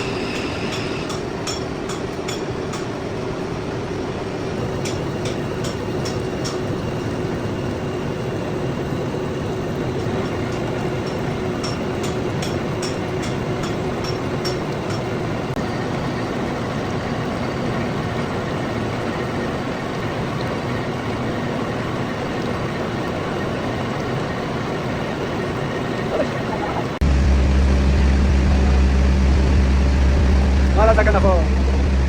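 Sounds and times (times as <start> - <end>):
lathe running: 0.0 - 16.4
deep steady hum: 26.6 - 32.0.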